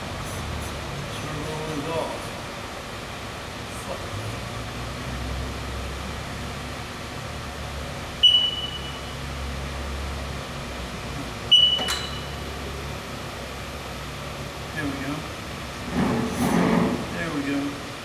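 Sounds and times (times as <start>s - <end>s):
short high beeps: 8.2s - 9.2s.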